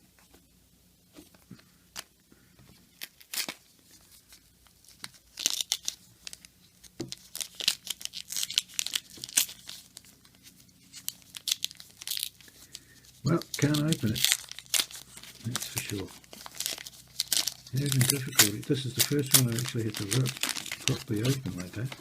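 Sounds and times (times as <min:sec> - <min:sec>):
paper wrapper tearing and crinkling: 0:03.0 - 0:22.0.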